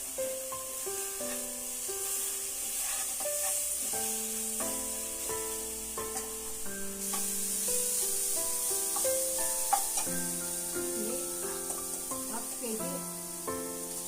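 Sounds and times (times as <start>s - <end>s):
background melody: 0.0s - 14.0s
spices sizzling in oil: 0.0s - 14.0s
stirring scrapes: 1.1s - 4.1s.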